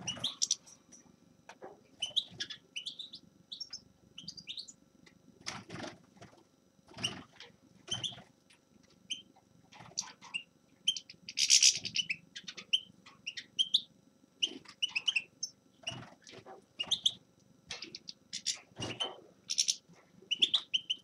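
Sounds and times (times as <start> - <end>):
finch singing: 0.0 - 0.7, 2.0 - 4.8, 9.1 - 16.0, 16.8 - 21.0.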